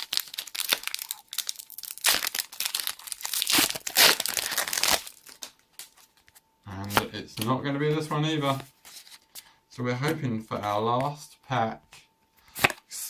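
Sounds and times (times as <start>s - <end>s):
foil wrapper tearing and crinkling: 0.0s - 6.0s.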